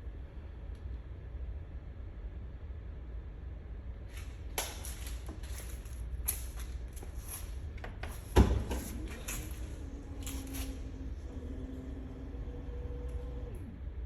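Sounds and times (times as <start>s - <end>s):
rustling and scraping gear: 4.1s - 7.6s.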